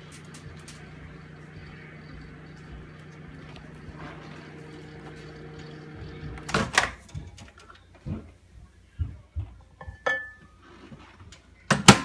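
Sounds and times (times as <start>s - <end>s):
microwave oven humming: 0.0s - 7.9s.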